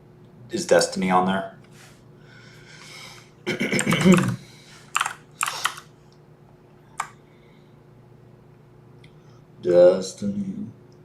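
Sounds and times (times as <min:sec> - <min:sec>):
computer keyboard typing: 0:03.6 - 0:05.9.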